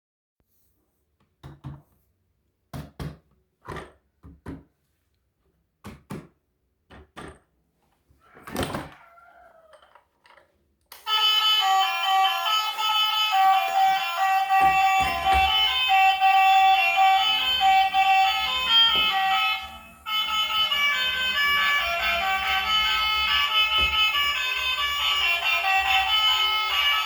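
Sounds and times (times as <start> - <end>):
music: 11.0 - 27.0.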